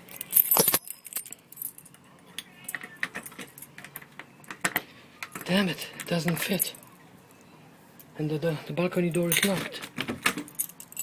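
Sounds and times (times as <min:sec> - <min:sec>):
keys jangling: 0:00.1 - 0:01.9, 0:10.4 - 0:11.0.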